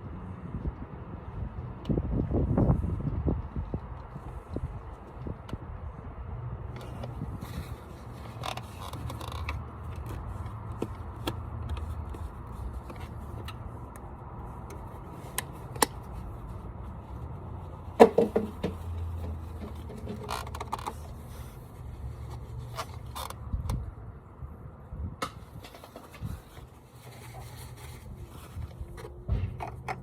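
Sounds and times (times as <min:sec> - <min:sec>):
clicks and knocks of handling: 0:06.7 - 0:16.3, 0:18.0 - 0:21.3.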